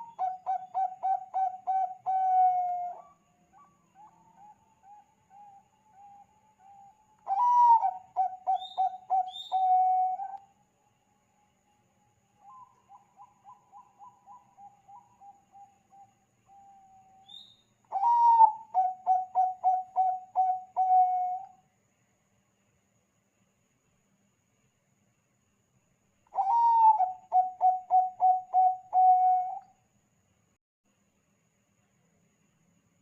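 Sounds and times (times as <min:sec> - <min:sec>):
dove cooing: 0:00.0 - 0:10.4, 0:17.9 - 0:21.5, 0:26.4 - 0:29.6.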